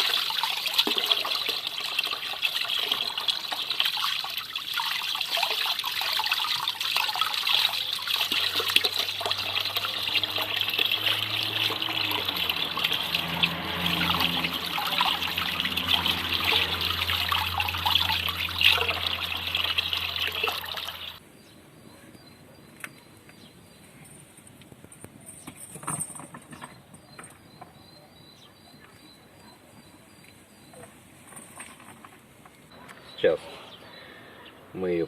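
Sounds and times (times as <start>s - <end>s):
running water splashing: 0.0s - 21.2s.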